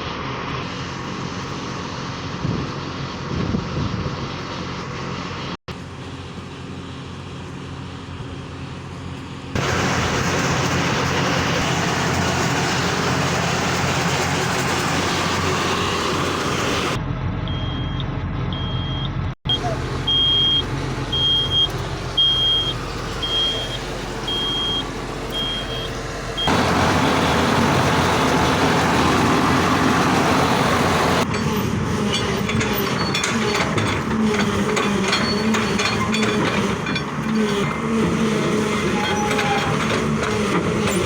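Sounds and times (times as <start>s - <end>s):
excavator diesel engine running: 0.0s - 41.0s
high-pitched warning alarm beeping: 17.5s - 26.6s.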